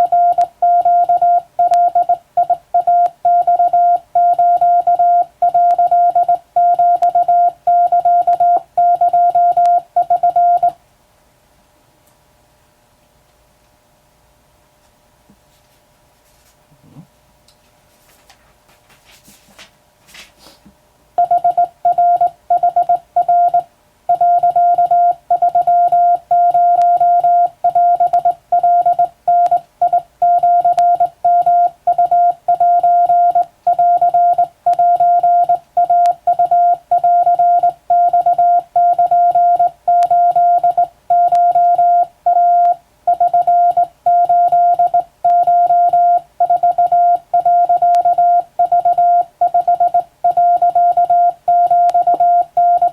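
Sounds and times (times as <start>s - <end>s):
morse code beeps: 0.0s - 10.8s, 21.2s - 52.9s.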